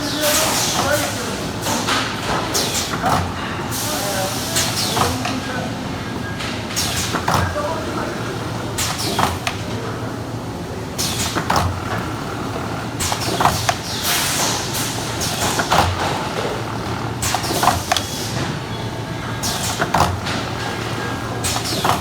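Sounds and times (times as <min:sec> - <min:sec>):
machine hissing and clacking: 0:00.0 - 0:05.6, 0:06.3 - 0:07.7, 0:11.0 - 0:22.0
machine motor hum: 0:00.0 - 0:22.0.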